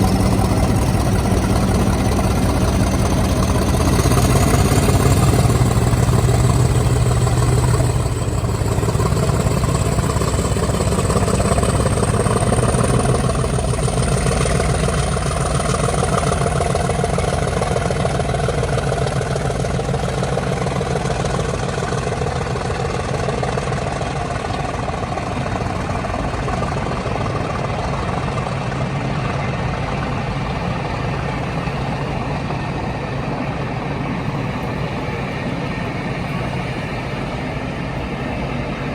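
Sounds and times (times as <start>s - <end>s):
diesel locomotive engine running: 0.0s - 38.9s.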